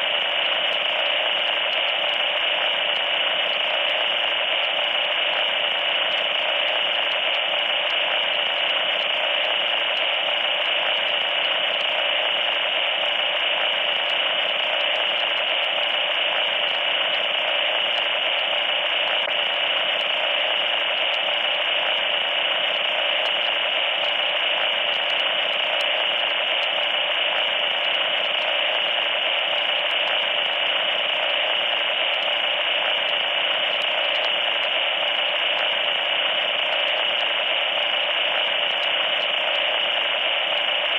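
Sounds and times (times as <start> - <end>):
radio static hiss: 0.0 - 40.9.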